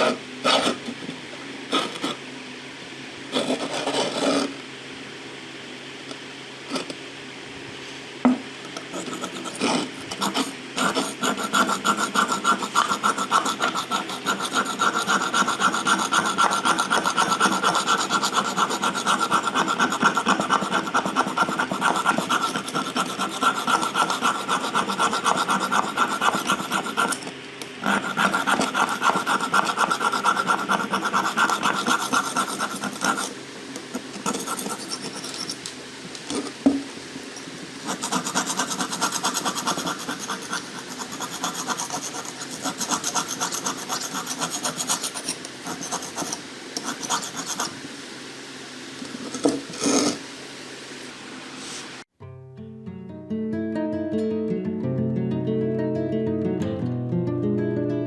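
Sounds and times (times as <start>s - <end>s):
abrasive rasping of filing: 3.3s - 4.5s, 8.9s - 35.6s, 37.8s - 47.8s.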